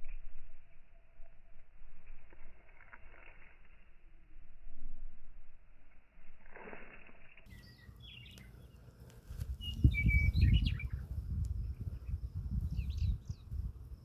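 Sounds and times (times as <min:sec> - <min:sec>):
uneven low rumble: 0:00.0 - 0:07.2
small birds chirping: 0:07.4 - 0:14.0.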